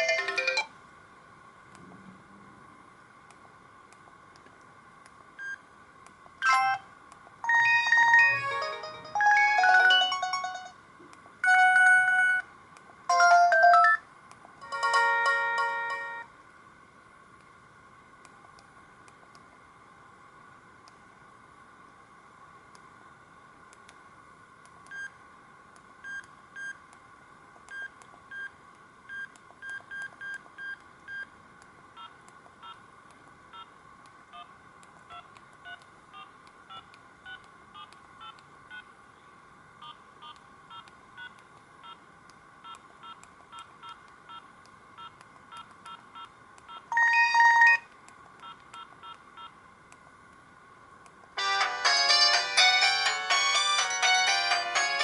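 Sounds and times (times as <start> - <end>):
faint steady whine: 0.0 - 55.0.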